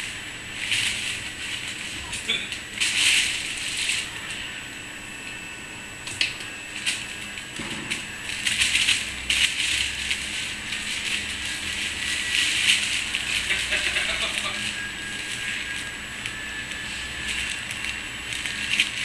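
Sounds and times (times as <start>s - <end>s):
play tunnel rustling and crackling: 0.0s - 4.6s, 6.8s - 19.0s.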